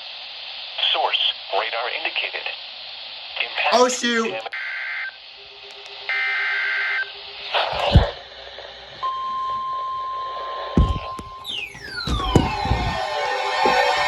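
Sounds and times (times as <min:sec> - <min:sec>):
thump: 0:07.7 - 0:08.2, 0:10.8 - 0:14.0.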